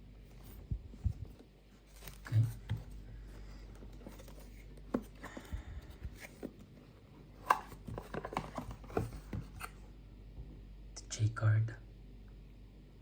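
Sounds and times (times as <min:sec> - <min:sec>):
hands handling packaging: 0:00.4 - 0:09.8.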